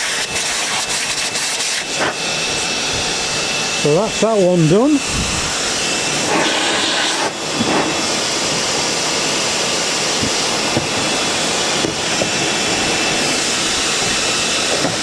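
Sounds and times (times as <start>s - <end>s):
vacuum blower air rush: 0.0s - 15.0s.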